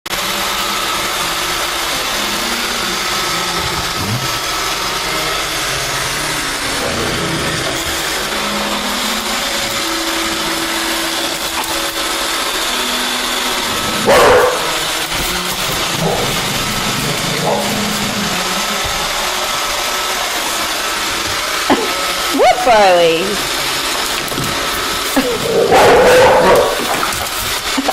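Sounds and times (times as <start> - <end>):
robot vacuum whirring: 0.2 - 27.9
dog barking: 14.0 - 15.0, 15.9 - 18.0, 25.2 - 27.3.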